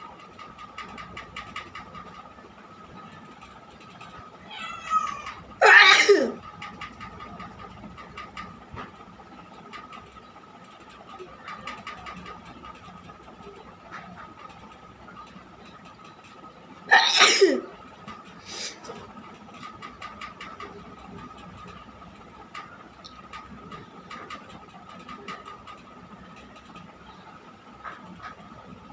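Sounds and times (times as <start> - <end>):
faint steady background tone: 0.0 - 28.9
person sneezing: 5.6 - 6.4, 16.9 - 17.6.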